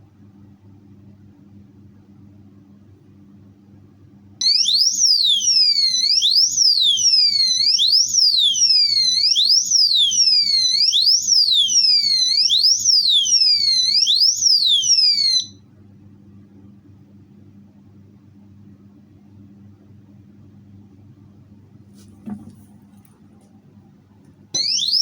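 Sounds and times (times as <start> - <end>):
electronic alarm siren wailing: 4.4 - 15.6, 24.6 - 25.0.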